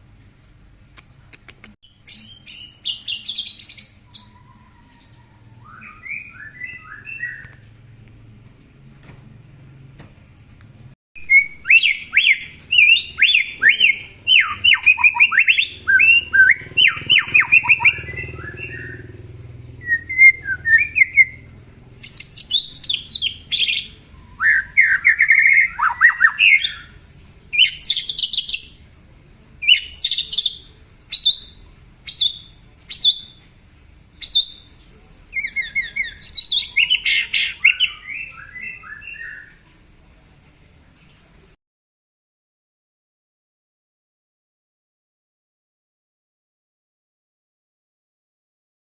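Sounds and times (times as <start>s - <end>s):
songbird whistling and chipping: 1.9s - 7.6s, 11.2s - 19.1s, 19.8s - 26.9s, 27.6s - 28.8s, 29.6s - 33.4s, 34.2s - 34.8s, 35.4s - 39.6s.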